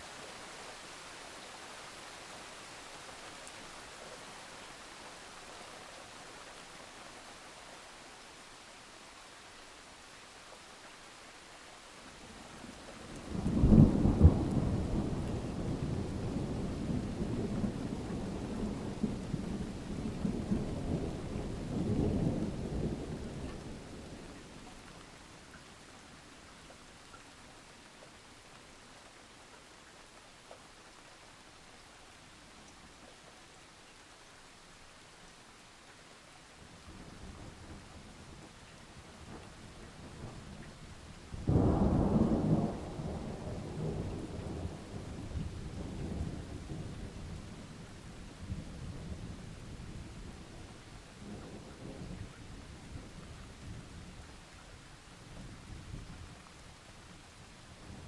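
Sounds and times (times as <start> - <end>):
steady rain: 0.0 - 58.0
thunder crack and rumble: 41.4 - 47.5.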